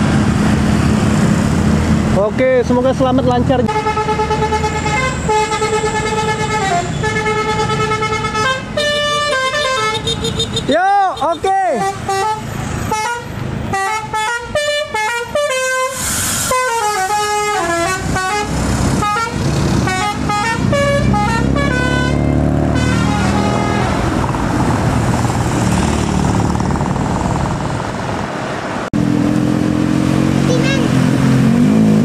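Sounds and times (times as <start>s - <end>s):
bus driving past: 0.0s - 10.7s, 11.9s - 32.0s
bus air horn tune: 3.7s - 10.7s, 11.8s - 24.1s.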